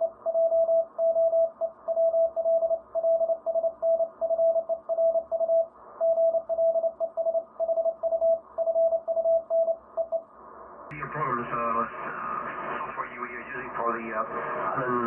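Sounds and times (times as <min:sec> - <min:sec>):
morse code beeps: 0:00.0 - 0:10.3
radio hiss: 0:10.4 - 0:15.0.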